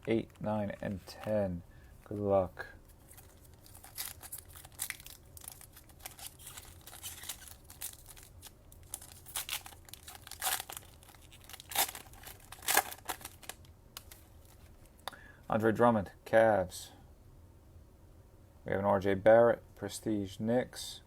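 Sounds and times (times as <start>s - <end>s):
wrapper tearing and crinkling: 3.0s - 14.8s.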